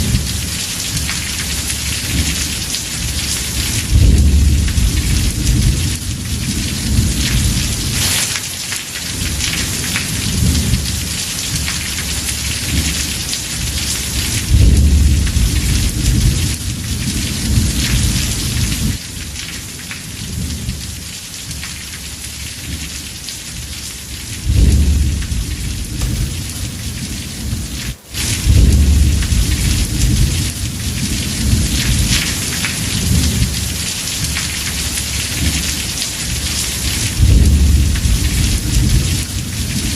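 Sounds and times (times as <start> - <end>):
heavy rain falling: 0.0 - 39.9
thunder rumbling: 1.8 - 8.1, 12.5 - 19.0, 24.2 - 39.9.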